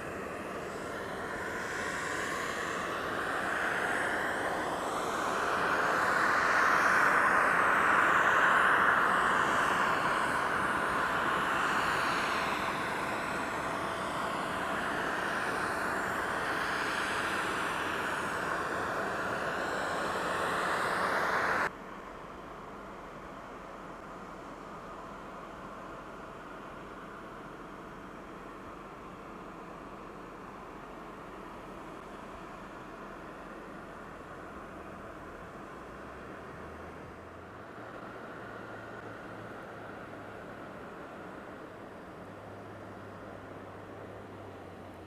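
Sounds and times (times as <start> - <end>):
jet engines roaring: 0.0 - 21.7
faint steady whine: 0.0 - 45.0.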